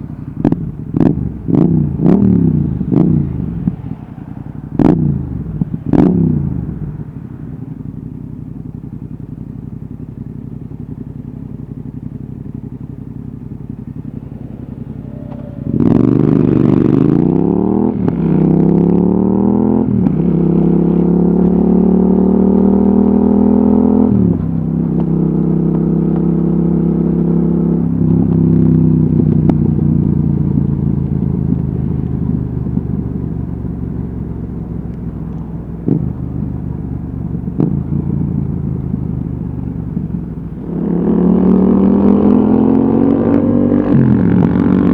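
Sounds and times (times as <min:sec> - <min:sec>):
motorcycle engine idling: 0:00.0 - 0:41.0
motorcycle accelerating through gears: 0:00.0 - 0:44.9
motorcycle throttle blips: 0:00.0 - 0:44.9.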